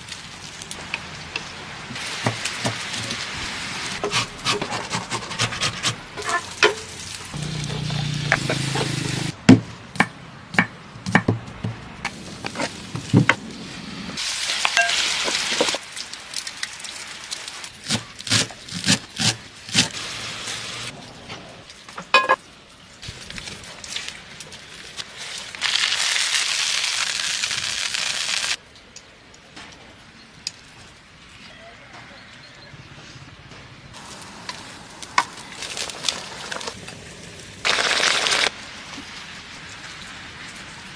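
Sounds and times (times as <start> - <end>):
food sizzling in hot oil: 14.2 - 16.0.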